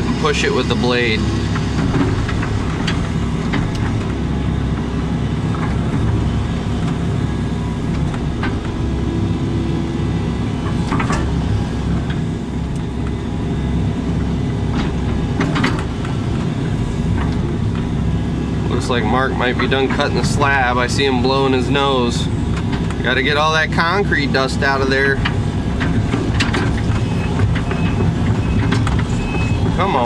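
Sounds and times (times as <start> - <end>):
excavator diesel engine running: 0.0 - 30.0
hydraulics working: 0.0 - 30.0
knocks and clanks: 1.4 - 4.2, 10.6 - 12.9, 14.7 - 18.1, 22.3 - 23.4, 24.7 - 30.0.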